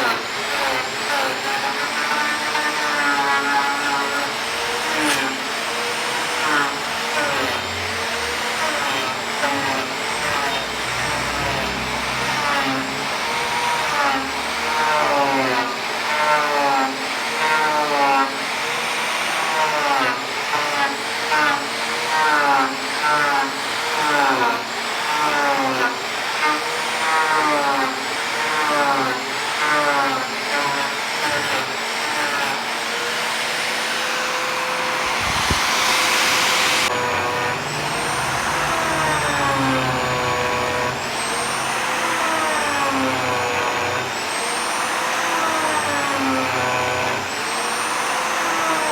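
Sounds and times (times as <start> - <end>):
power tool cutting wood: 0.0 - 48.9.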